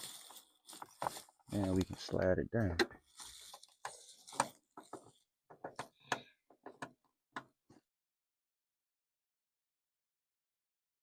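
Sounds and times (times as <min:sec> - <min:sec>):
plastic part clicking and knocking: 0:04.4 - 0:07.6.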